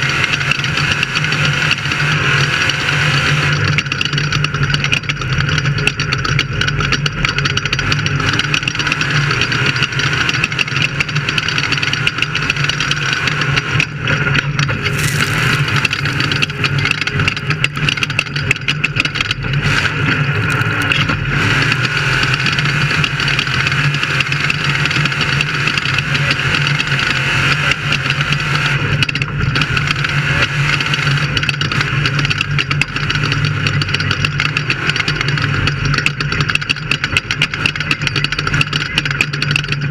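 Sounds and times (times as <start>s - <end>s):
race vehicle engine running: 0.0s - 39.9s
loud rushing noise: 14.8s - 17.6s.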